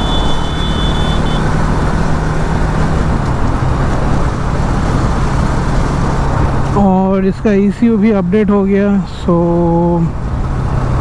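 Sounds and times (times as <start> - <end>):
brief high-pitched tone: 0.0 - 1.4
motorcycle engine running: 0.0 - 3.6
road and wind noise: 0.0 - 11.0.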